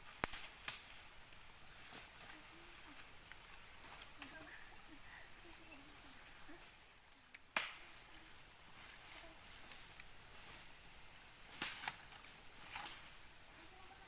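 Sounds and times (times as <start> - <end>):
high-pitched hiss: 0.0 - 14.0.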